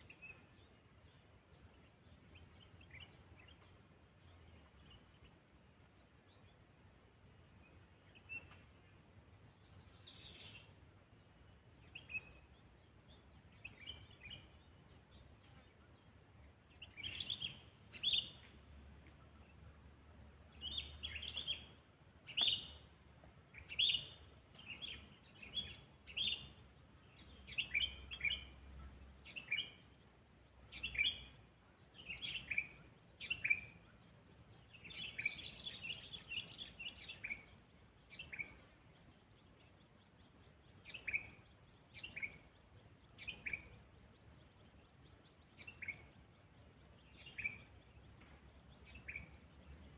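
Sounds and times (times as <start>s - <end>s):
faint high hiss: 0.0s - 49.9s
bulbul calling: 20.6s - 22.9s.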